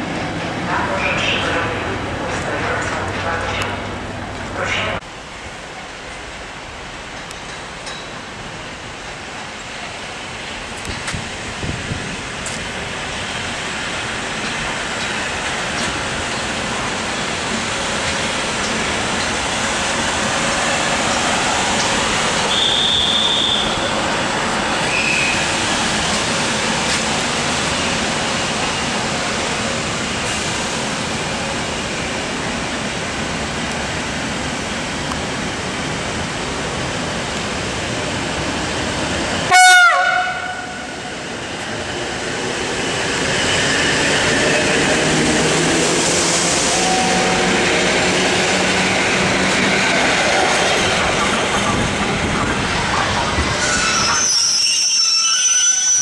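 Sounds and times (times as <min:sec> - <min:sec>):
train wheels rumbling: 0:00.0 - 0:55.0
train horn toot: 0:22.5 - 0:23.9, 0:39.5 - 0:40.9, 0:46.7 - 0:47.5.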